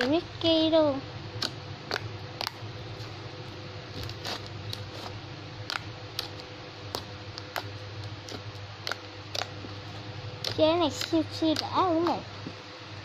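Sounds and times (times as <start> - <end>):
slime clicking and popping: 1.4 - 2.6, 4.0 - 9.6, 10.4 - 12.2.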